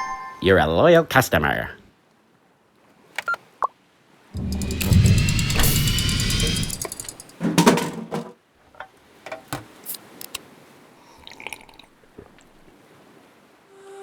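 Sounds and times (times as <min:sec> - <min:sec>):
short low burst: 0:04.4 - 0:07.3.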